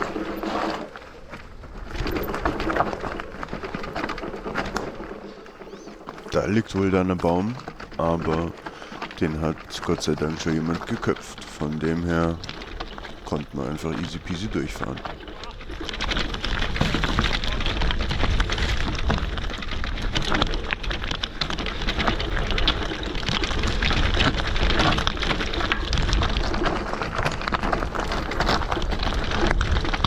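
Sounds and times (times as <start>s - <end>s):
wind rumble on microphone: 0.0s - 13.7s, 14.8s - 30.0s
tyres crunching on loose stones: 5.5s - 30.0s.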